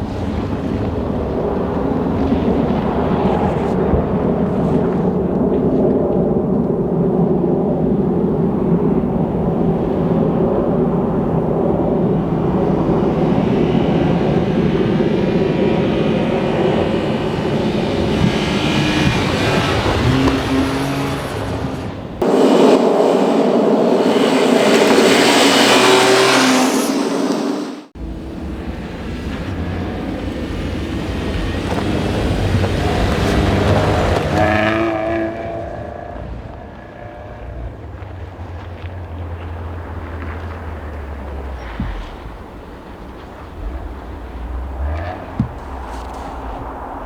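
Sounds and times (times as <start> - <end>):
rally car engines revving past: 11.9 - 47.0.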